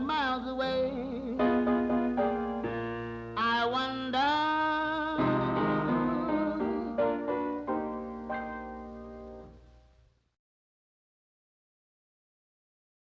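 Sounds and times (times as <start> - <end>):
slow piano ballad: 0.0 - 9.6.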